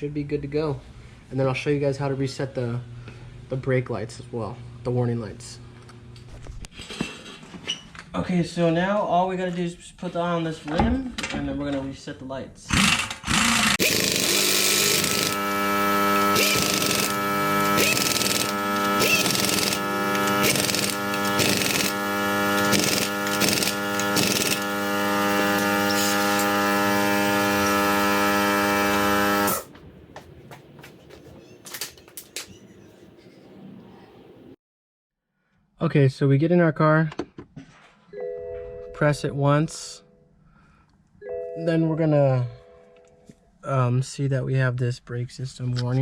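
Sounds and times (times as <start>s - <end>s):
impact wrench running: 12.7s - 29.7s.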